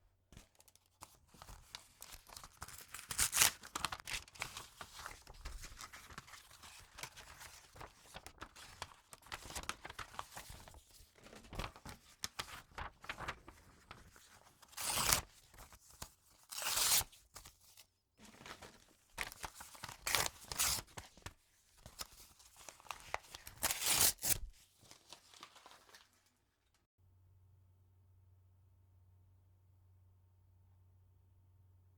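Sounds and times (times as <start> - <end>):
paper rustling and crinkling: 0.4 - 26.7
paper ripping: 2.0 - 10.5, 11.3 - 13.4, 14.6 - 15.3, 16.5 - 17.0, 18.2 - 21.0, 22.8 - 26.2.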